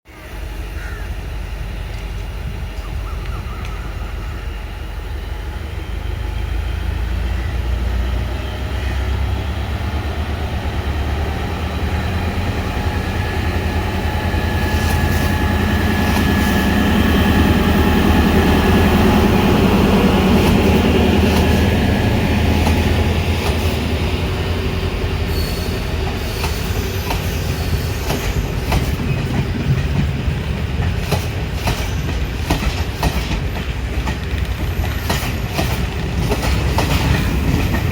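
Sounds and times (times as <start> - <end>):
train engine hum: 0.1 - 37.9
wheel squeal: 25.3 - 28.9
wheels clicking over rail joints: 28.0 - 37.9.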